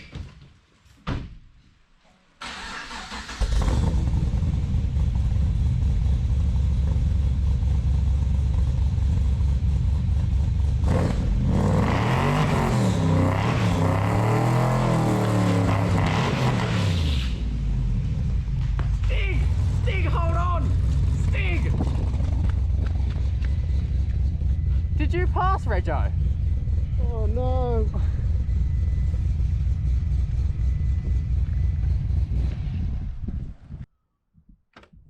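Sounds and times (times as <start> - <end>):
engine idling and revving: 2.5 - 33.9.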